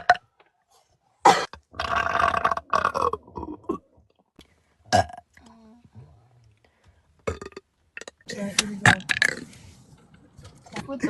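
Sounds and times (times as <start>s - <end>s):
woman belching: 1.3s - 4.0s, 4.9s - 5.3s, 7.2s - 9.4s.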